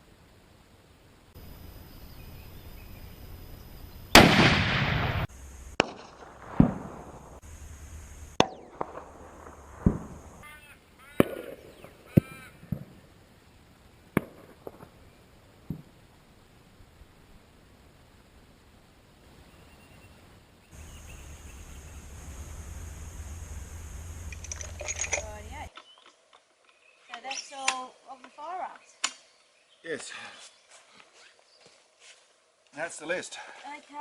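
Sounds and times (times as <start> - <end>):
gunshot echo: 4.1 - 7.4, 8.4 - 10.3, 11.2 - 12.9, 14.2 - 14.9
rifle shots: 4.1 - 7.4.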